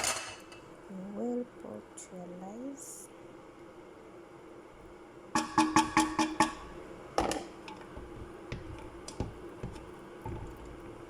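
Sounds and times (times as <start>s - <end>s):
metal utensil tapping a pot: 5.4s - 6.6s.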